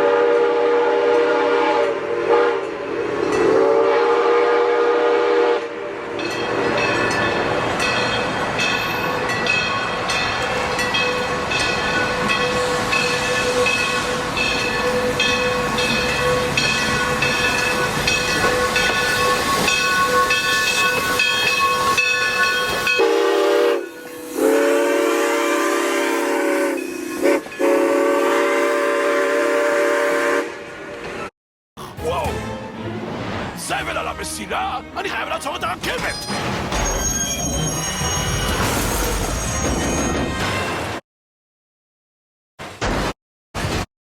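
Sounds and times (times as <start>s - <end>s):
steam whistle blast: 0.0s - 5.9s, 22.8s - 30.7s
steam locomotive chuffing and hissing: 11.4s - 30.5s.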